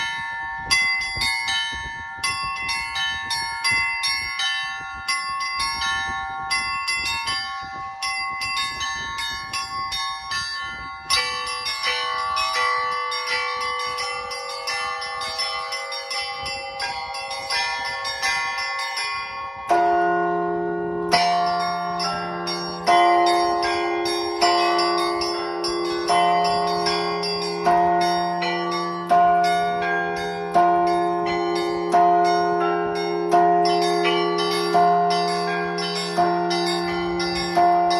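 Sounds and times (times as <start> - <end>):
middle church bells: 0.0 - 37.9
small church bells ringing: 0.0 - 37.9
deep bell striking: 5.0 - 37.9.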